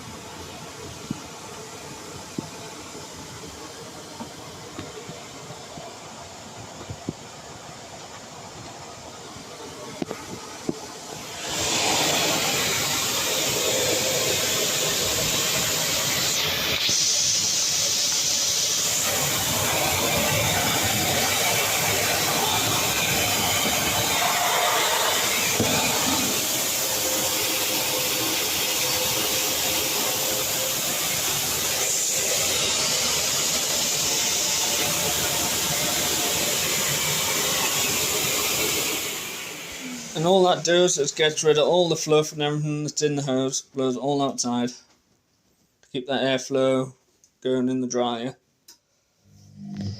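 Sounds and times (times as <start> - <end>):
pet blower rushing air: 9.6 - 40.8.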